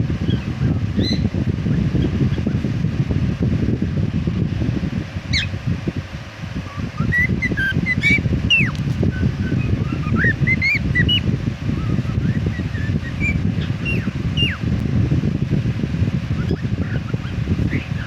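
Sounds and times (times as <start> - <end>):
cockatiel chirping and whistling: 0.2 - 1.3, 5.3 - 5.5, 6.7 - 14.6, 16.4 - 18.0.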